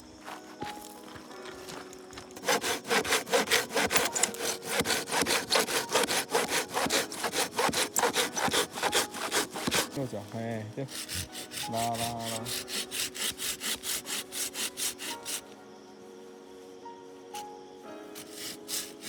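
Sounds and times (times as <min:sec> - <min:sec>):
hand saw cutting wood: 0:02.4 - 0:15.4, 0:18.2 - 0:19.0.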